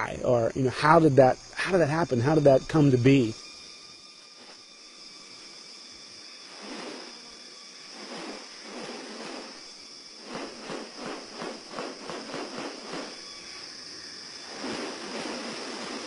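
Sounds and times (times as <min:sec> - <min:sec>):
steady high hiss: 0:00.0 - 0:16.0
rustling noise: 0:06.5 - 0:07.2, 0:07.9 - 0:13.3, 0:14.4 - 0:16.0.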